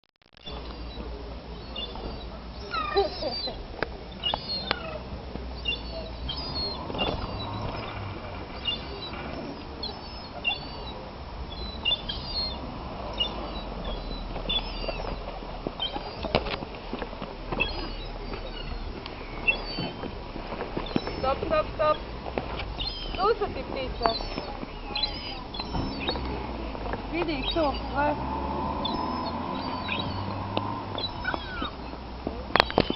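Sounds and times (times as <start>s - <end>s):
birds chirping: 0.4s - 32.9s.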